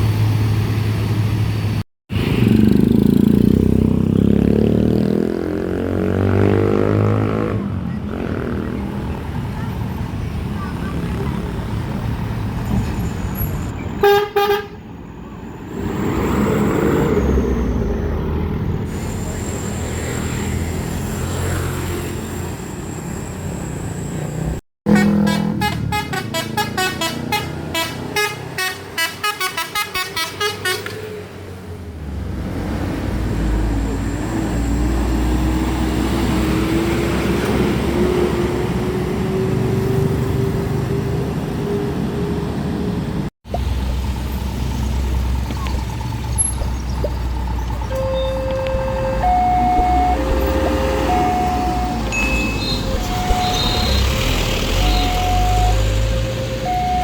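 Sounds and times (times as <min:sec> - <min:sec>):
heavy road traffic: 0:00.0 - 0:57.0
vehicle horns tooting: 0:14.0 - 0:14.8, 0:24.9 - 0:31.0, 0:47.9 - 0:57.0
engine pitch rising: 0:43.6 - 0:57.0.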